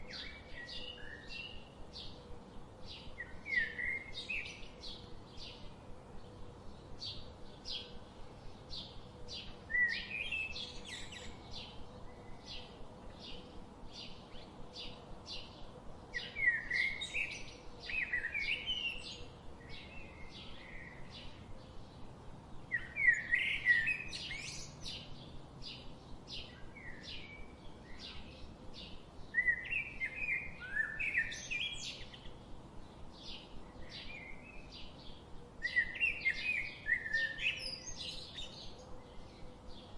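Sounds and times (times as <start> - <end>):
small birds chirping: 0.0 - 39.9
twittering warbling birdsong: 0.0 - 39.9.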